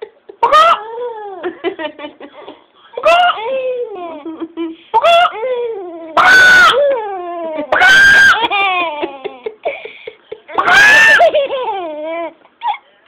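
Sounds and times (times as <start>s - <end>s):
baby laughing and squealing: 3.0s - 4.3s, 5.0s - 9.6s, 10.5s - 12.8s.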